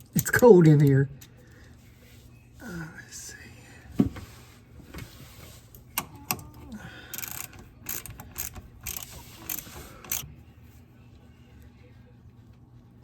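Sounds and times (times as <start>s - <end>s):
hand tool and metal clicks: 0.0s - 0.5s, 6.0s - 10.2s
rasping ratchet-like strokes: 7.1s - 10.2s.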